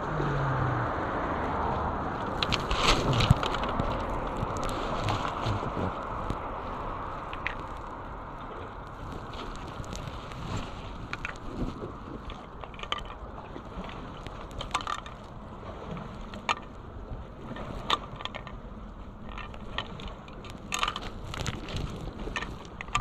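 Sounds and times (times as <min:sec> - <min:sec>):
irregular clicks and crunches: 0:02.2 - 0:06.5, 0:07.2 - 0:16.7, 0:19.2 - 0:23.0.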